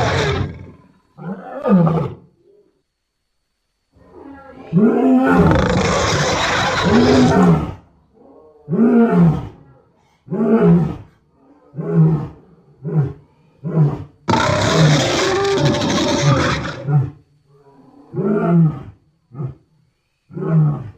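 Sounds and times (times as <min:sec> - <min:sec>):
creature roars: 0:00.0 - 0:00.8, 0:04.9 - 0:07.8, 0:13.8 - 0:17.1.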